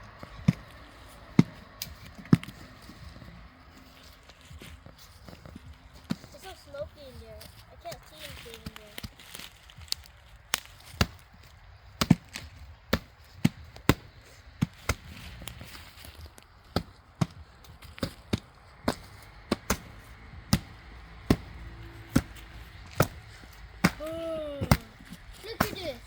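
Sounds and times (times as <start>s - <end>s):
chopping strikes into wood: 10.5s - 15.6s, 16.6s - 26.0s.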